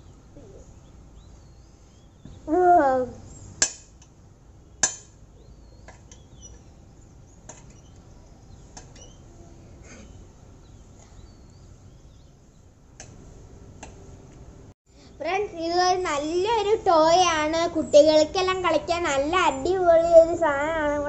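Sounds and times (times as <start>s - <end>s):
faint bird chirps: 0.0s - 3.6s, 4.6s - 12.7s.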